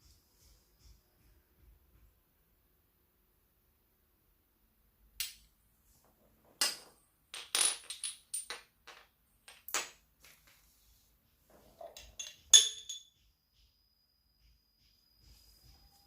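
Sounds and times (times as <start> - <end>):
hard objects clicking and knocking: 6.4 - 10.6, 11.5 - 13.3.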